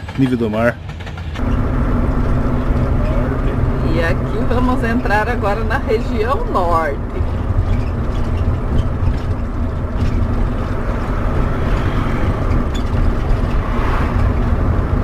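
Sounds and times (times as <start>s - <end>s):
bus engine drone: 0.0s - 15.0s
road noise: 0.0s - 15.0s.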